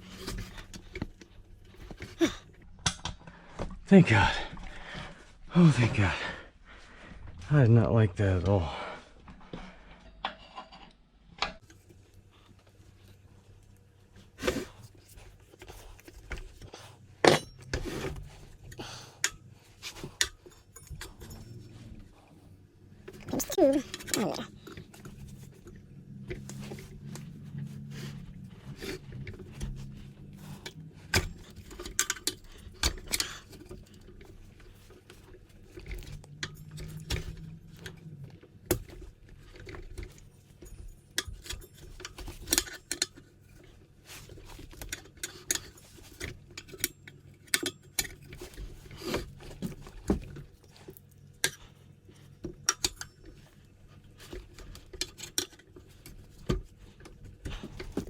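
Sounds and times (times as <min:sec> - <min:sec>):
hands and metal tools clinking: 0:11.6 - 0:58.0.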